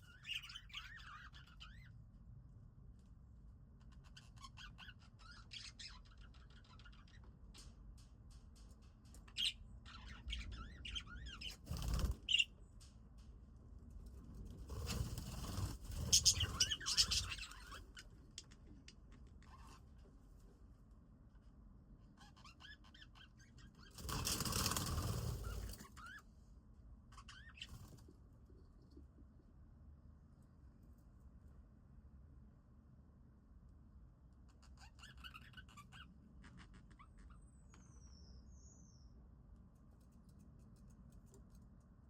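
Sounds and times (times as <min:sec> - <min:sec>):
budgies chirping: 0:00.0 - 0:01.9, 0:09.3 - 0:12.5, 0:16.0 - 0:18.0, 0:34.5 - 0:39.0
wings flapping: 0:11.6 - 0:12.4, 0:14.7 - 0:17.4, 0:24.0 - 0:25.9.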